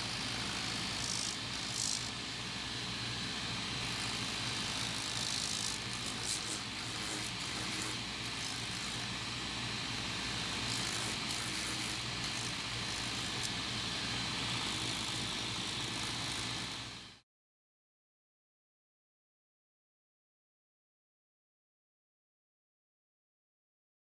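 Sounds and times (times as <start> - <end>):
shoe-repair machine running: 0.0 - 17.2
scratchy grinding: 0.1 - 2.1, 3.8 - 13.6, 14.5 - 16.8.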